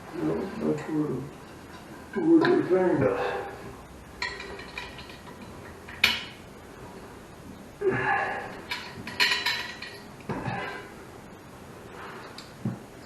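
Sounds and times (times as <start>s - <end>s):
clinks of small metal parts and tools: 4.2s - 6.3s.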